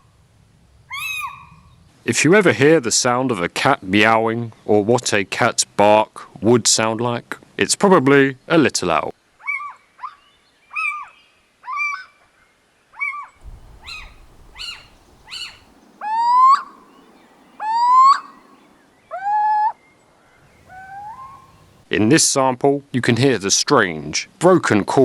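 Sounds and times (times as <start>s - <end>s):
owl mewing calls: 0.9s - 1.8s, 9.4s - 12.2s, 13.0s - 21.8s.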